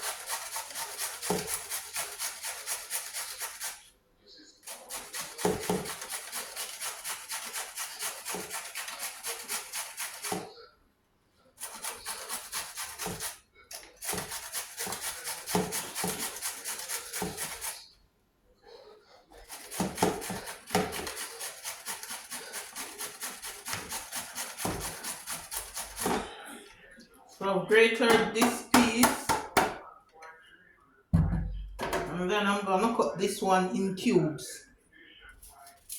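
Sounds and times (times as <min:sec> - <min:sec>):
pumpkin rasping on hand grater: 0:00.0 - 0:03.8, 0:04.6 - 0:10.5, 0:11.6 - 0:17.8, 0:19.4 - 0:26.3.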